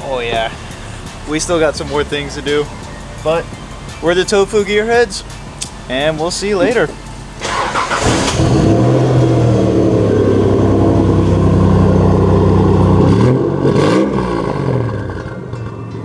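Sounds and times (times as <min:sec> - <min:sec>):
car engine revving: 0:00.0 - 0:15.8.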